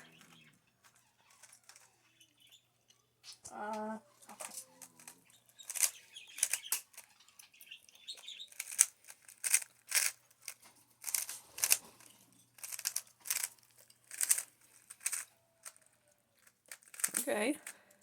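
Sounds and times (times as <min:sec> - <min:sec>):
plastic puzzle cube clicking: 0:04.3 - 0:18.0.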